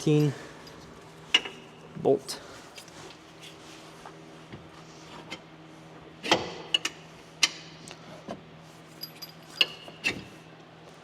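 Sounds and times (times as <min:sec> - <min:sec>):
steady low hum: 0:00.0 - 0:11.0
metal bolt clinking: 0:09.0 - 0:10.2.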